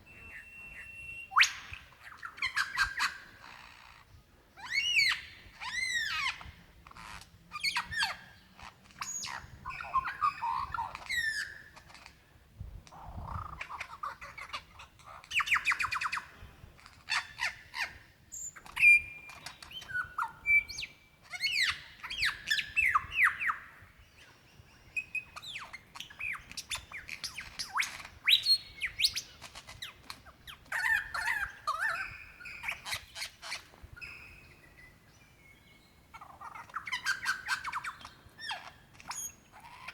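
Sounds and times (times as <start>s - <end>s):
lyrebird singing mimicked calls: 0.0s - 4.0s, 17.1s - 23.8s, 24.9s - 39.9s.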